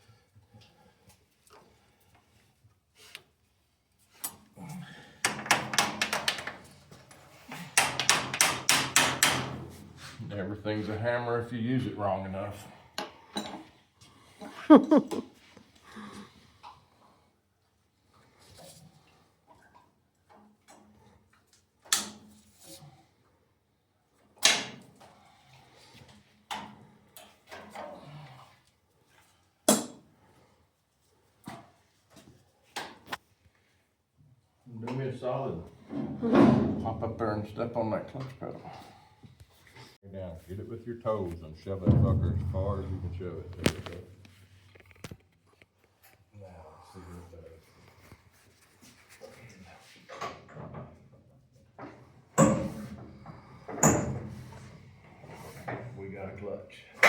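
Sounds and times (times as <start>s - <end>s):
tools knocking on metal: 7.8s - 9.7s
soft metal rattling: 41.8s - 45.0s.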